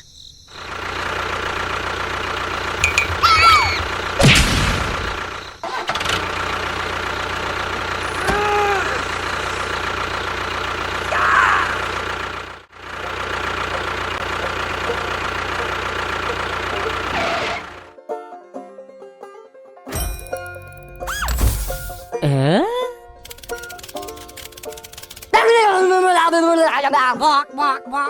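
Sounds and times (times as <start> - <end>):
small engine running: 0.5 - 17.9, 23.1 - 26.2
music: 17.9 - 25.1, 26.7 - 28.0.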